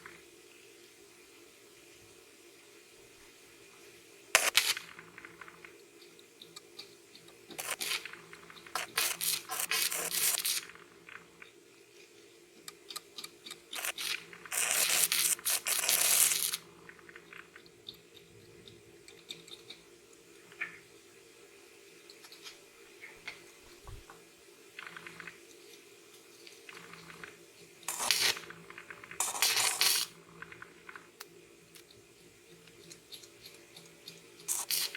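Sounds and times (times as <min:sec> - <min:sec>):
faint steady hum: 0:00.0 - 0:34.9
welding arc crackling: 0:04.4 - 0:05.4, 0:07.5 - 0:10.9, 0:13.7 - 0:16.6, 0:27.9 - 0:30.2, 0:34.5 - 0:34.9.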